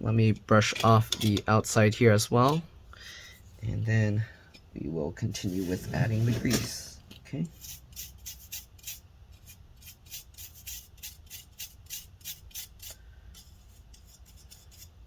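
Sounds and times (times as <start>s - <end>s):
faint scratching: 5.2s - 15.0s
brush sweeping fan: 5.3s - 6.9s.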